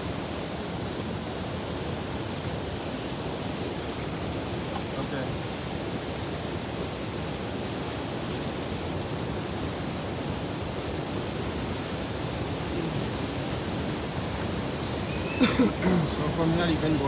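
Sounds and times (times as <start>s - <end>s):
river water rushing: 0.1s - 17.0s.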